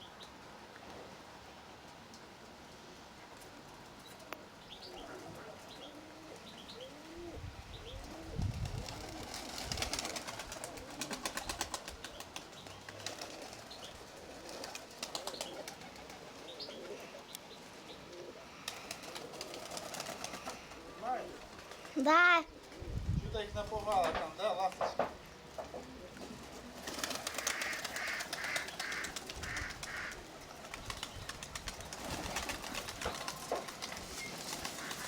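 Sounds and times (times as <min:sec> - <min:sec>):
small birds chirping: 0:04.0 - 0:08.9, 0:09.7 - 0:26.0, 0:26.8 - 0:35.0
pigeons cooing: 0:04.1 - 0:23.2, 0:25.4 - 0:35.0
wings flapping: 0:08.1 - 0:17.0, 0:18.6 - 0:25.0, 0:25.9 - 0:35.0.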